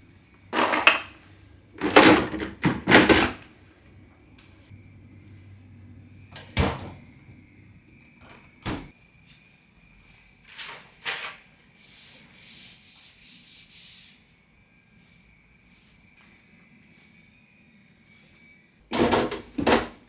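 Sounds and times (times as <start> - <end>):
objects knocking: 0.5 - 3.5.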